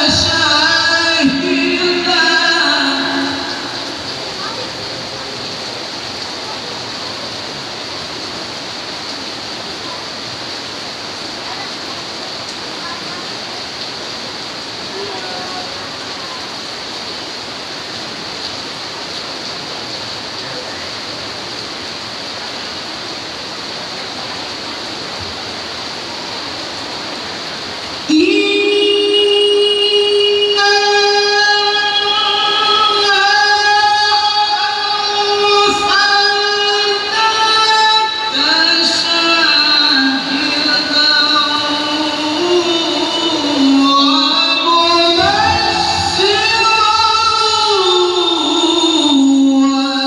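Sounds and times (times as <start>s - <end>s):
person reciting a long held note: 0.0s - 4.7s, 28.0s - 50.0s
heavy rain pouring: 0.0s - 50.0s.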